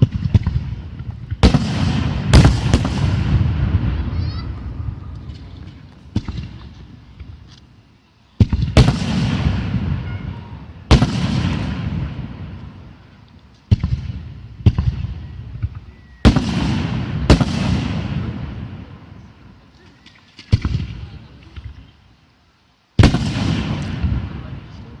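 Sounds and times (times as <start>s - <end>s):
fireworks bangs: 0.0s - 7.5s, 8.4s - 19.6s, 20.4s - 21.9s, 23.0s - 25.0s.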